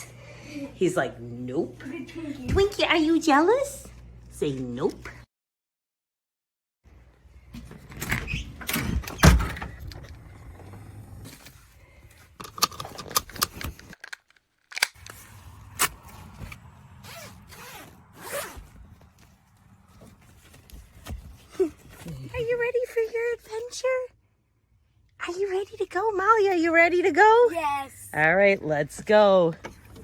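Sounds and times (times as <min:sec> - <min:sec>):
rustling and clicking handling noises: 0:12.1 - 0:15.3.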